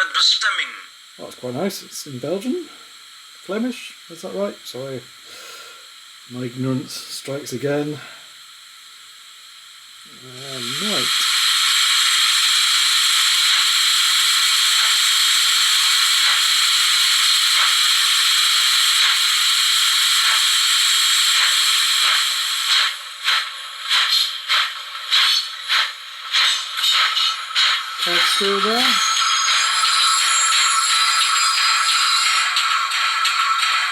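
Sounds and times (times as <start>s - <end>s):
steam hiss from small speaker: 0.0s - 33.9s
steam locomotive puffs: 10.4s - 33.9s.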